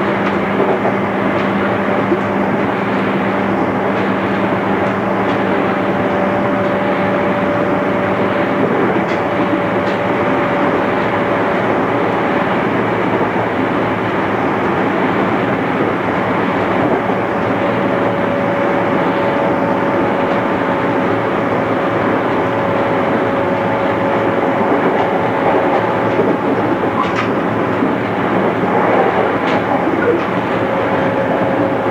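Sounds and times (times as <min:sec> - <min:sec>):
faint clicks from rails: 0:00.0 - 0:31.9
train rolling noise: 0:00.0 - 0:31.9.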